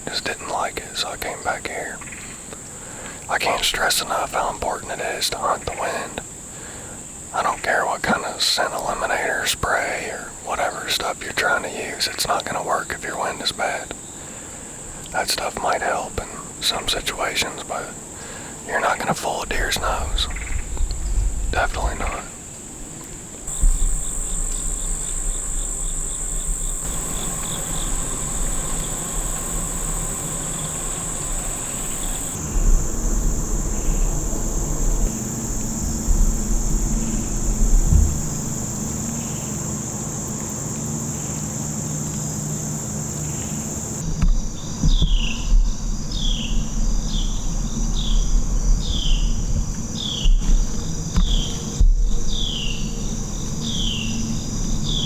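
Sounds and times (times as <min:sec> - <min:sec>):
crickets and insects trilling: 0:00.0 - 0:55.0
low rumble: 0:23.5 - 0:40.1
falling chirp: 0:23.5 - 0:44.0.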